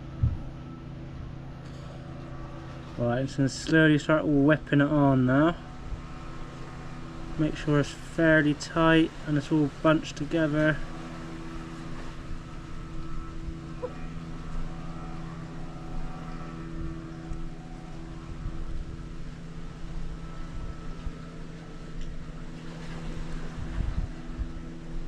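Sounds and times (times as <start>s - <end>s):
low rumble: 0.0s - 1.4s
low mechanical hum: 0.0s - 25.0s.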